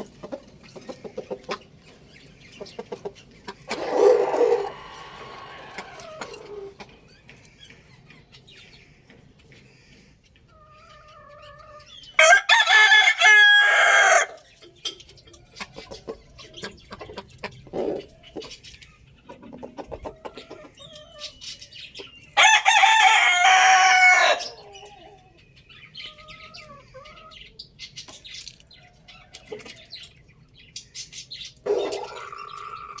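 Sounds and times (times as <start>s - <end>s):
chicken clucks and short calls: 0.0s - 33.0s
rooster crowing: 3.7s - 6.7s, 12.2s - 14.4s, 22.4s - 24.7s.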